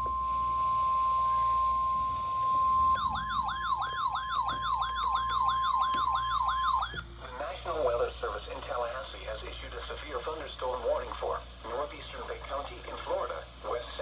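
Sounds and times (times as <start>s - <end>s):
warbling siren tone: 0.0s - 7.0s
steady alarm tone: 0.0s - 7.1s.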